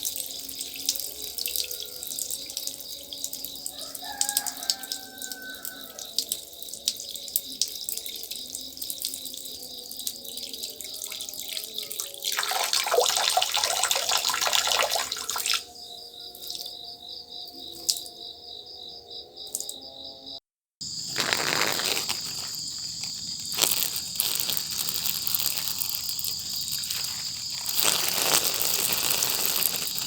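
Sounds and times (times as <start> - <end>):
person urinating: 0.0 - 9.4, 10.0 - 15.7, 21.1 - 30.0
insects chirping: 0.0 - 30.0.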